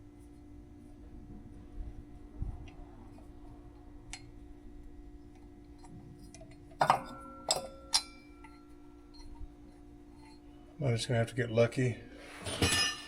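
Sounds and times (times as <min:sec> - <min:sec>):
metal tools clinking on metal: 0:06.8 - 0:09.4, 0:12.5 - 0:13.0.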